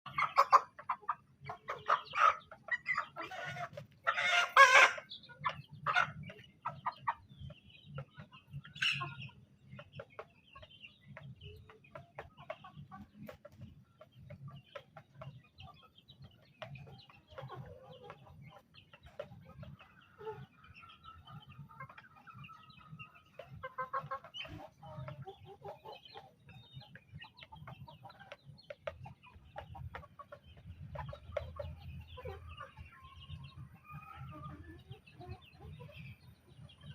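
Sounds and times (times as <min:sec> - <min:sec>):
chickens clucking and squawking: 0:00.0 - 0:36.9.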